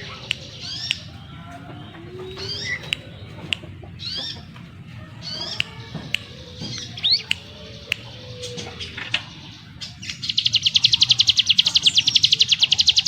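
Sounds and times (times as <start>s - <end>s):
bird chirps and whistles: 2.2s - 3.3s.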